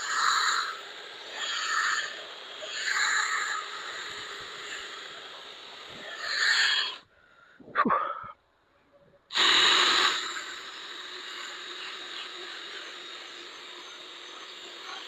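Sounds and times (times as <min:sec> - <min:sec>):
scrubbing hiss of lens polishing: 0:00.0 - 0:07.0.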